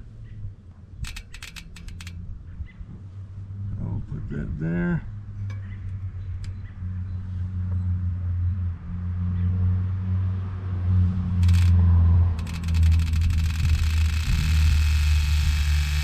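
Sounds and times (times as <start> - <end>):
bicycle chain clicking: 1.0 - 2.2, 11.4 - 16.0
freehub ratcheting buzz: 1.0 - 2.2, 11.4 - 16.0.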